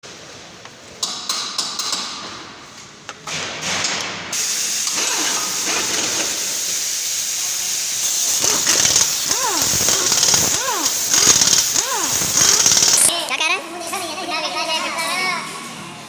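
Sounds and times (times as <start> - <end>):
steady hiss: 4.3 - 13.1.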